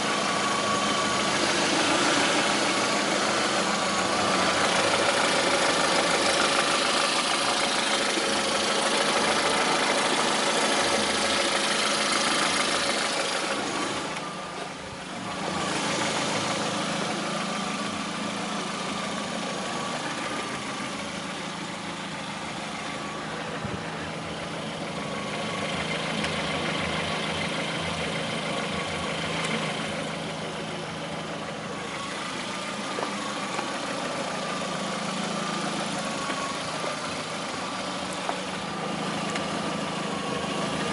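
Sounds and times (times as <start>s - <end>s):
car engine idling with a knock: 15.9s - 40.9s.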